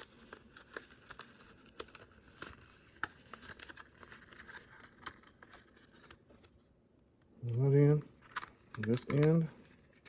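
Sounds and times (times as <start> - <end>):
paper and cardboard rustling: 0.0 - 6.6
light clicks and taps: 8.3 - 9.5.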